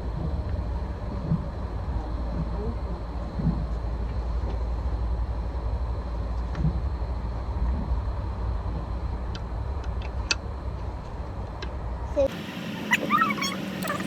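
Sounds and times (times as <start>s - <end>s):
faint clicks: 12.3s - 14.0s.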